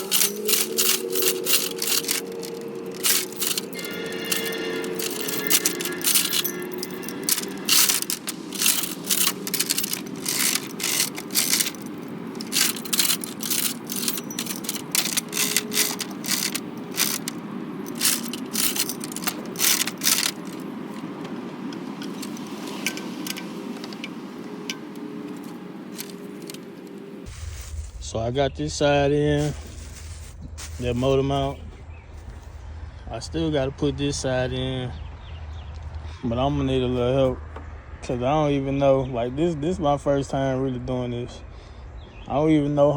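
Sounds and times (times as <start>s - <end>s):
chain rattling: 0.0s - 27.3s
metal clanking: 0.0s - 27.3s.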